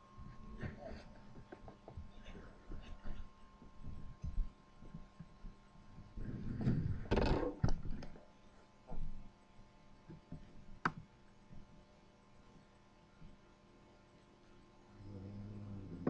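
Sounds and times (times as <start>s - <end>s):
quiet breathing: 0.0s - 7.1s, 14.9s - 16.0s
man snoring: 15.0s - 16.0s.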